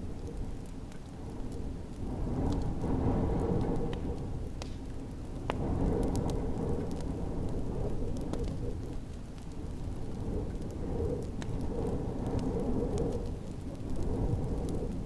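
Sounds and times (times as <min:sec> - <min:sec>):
snowstorm wind rumbling: 0:00.0 - 0:15.0
wood fire crackling and popping: 0:00.0 - 0:15.0.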